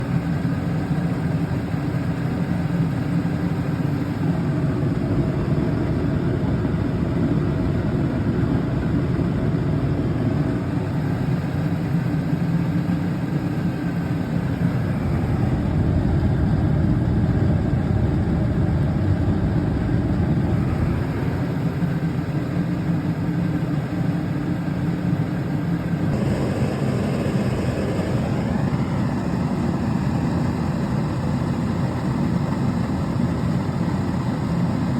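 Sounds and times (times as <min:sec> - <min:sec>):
dehumidifier humming: 0:25.8 - 0:31.8.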